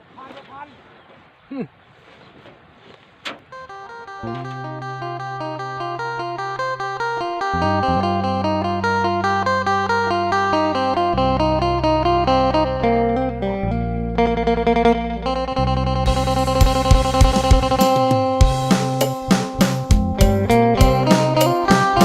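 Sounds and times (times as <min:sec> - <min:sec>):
held low notes: 0:03.4 - 0:22.0
amplified plucked string melody: 0:03.5 - 0:22.0
drums: 0:16.0 - 0:22.0.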